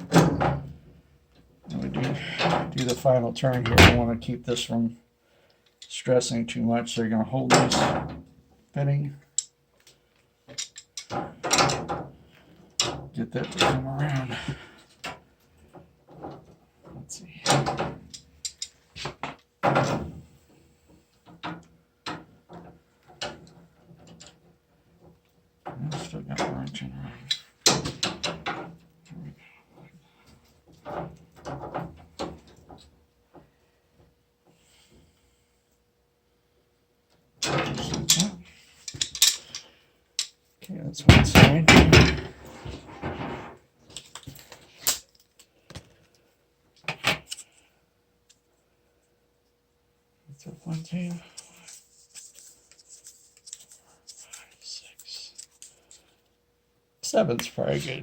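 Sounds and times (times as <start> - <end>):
tools and fittings clicking: 18.1 - 18.8.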